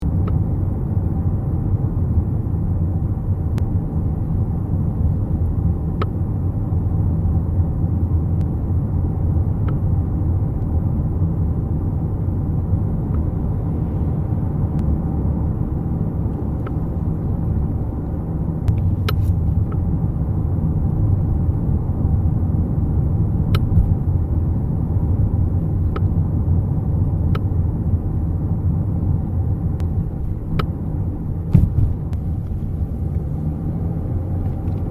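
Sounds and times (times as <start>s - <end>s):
car driving rumble: 0.0s - 34.9s
car seat clicking: 31.5s - 32.3s.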